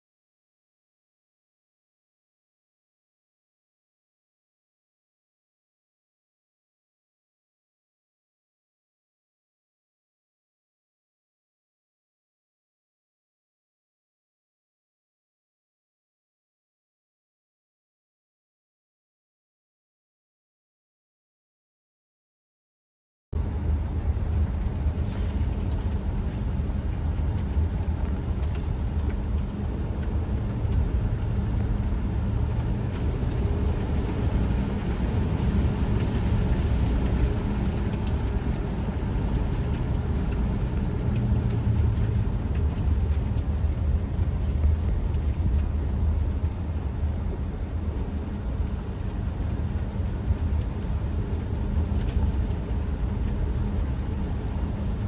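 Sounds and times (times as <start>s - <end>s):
vehicle driving from inside cabin: 23.4s - 55.0s.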